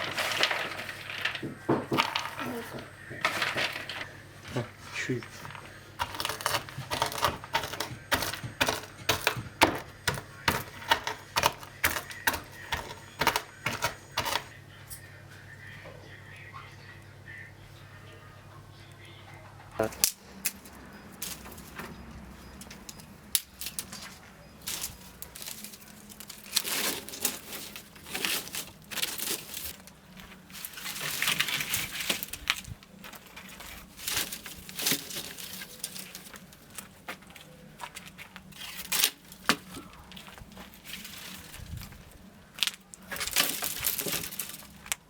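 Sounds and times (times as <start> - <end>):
crinkling and rustling: 0.0 - 14.6, 19.8 - 45.0.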